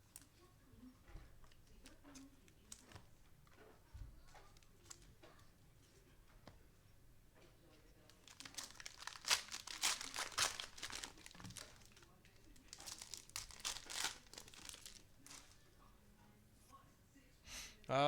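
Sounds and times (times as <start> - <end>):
plastic wrapper tearing and crinkling: 8.2 - 15.6.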